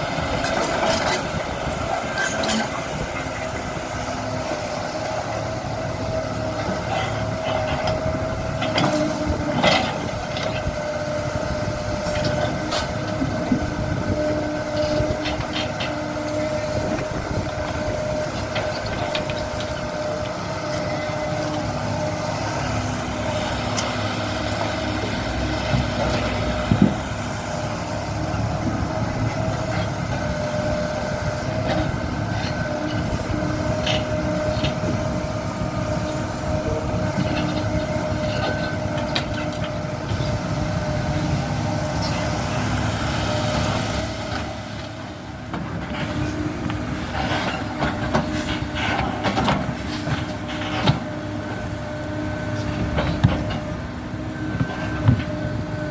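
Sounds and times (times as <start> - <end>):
constant whine: 0.0 - 55.9
excavator diesel engine running: 0.0 - 55.9.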